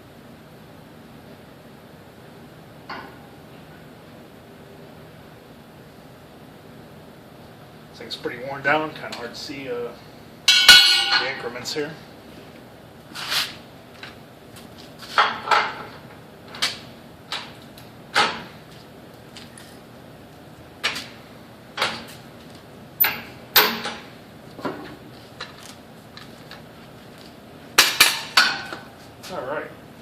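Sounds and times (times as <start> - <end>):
hard tools knocking and clacking: 10.5 - 11.4.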